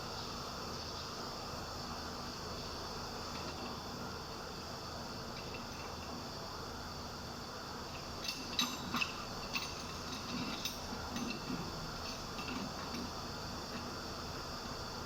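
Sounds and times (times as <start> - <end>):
crickets chirring: 0.0 - 15.0
metallic clicks and clinks: 8.2 - 13.1.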